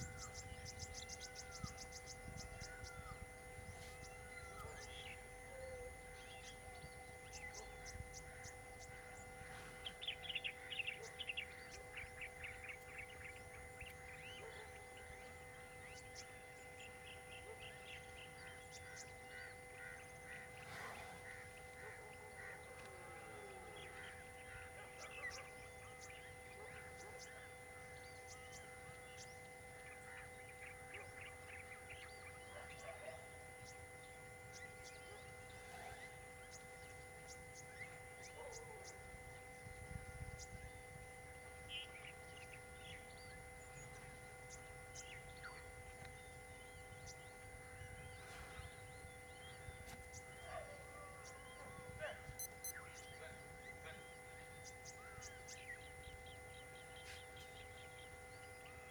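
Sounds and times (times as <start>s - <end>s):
birds chirping and trilling: 0.0s - 58.9s
thin steady high hum: 0.0s - 58.9s.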